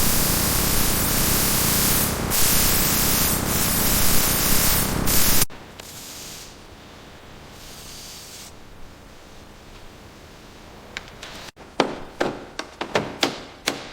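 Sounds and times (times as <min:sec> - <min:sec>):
loud hissing spray: 0:00.0 - 0:09.7
faint hiss: 0:00.0 - 0:11.6.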